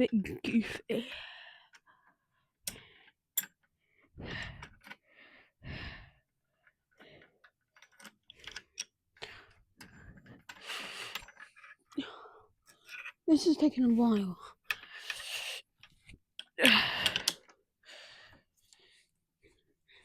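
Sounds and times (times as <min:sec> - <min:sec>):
parts clicking and knocking: 0:02.6 - 0:03.8, 0:06.5 - 0:13.2, 0:14.1 - 0:17.6.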